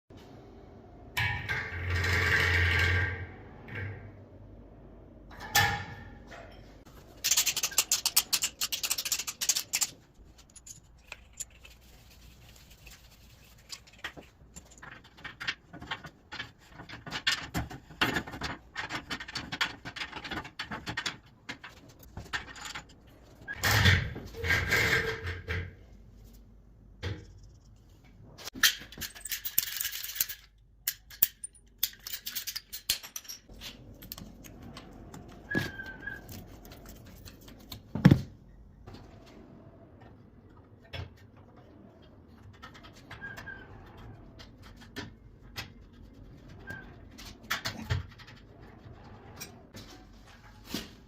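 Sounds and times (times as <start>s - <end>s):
metal tools clinking and rattling: 6.4s - 12.2s, 13.4s - 23.0s, 28.5s - 34.7s.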